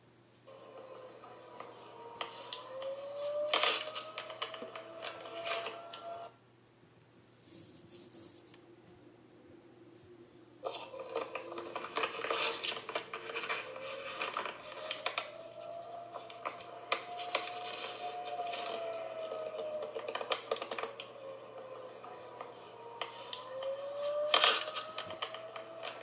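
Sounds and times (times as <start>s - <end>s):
siren rising in pitch: 0.5s - 6.4s, 12.4s - 26.0s.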